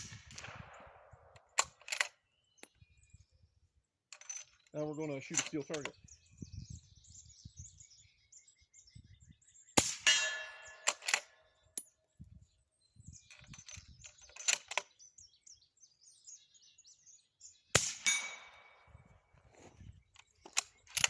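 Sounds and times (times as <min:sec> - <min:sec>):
muffled rifle shot: 0:00.0 - 0:01.6, 0:09.8 - 0:11.0, 0:17.8 - 0:18.8
sharp clicks: 0:01.4 - 0:02.8, 0:05.3 - 0:06.0, 0:10.8 - 0:11.9, 0:13.3 - 0:14.9, 0:20.2 - 0:21.0
steel target clanging: 0:10.0 - 0:10.9.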